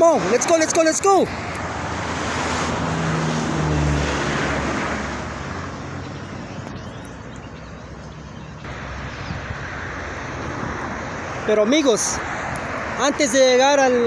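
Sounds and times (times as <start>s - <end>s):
car driving past: 1.3s - 6.4s.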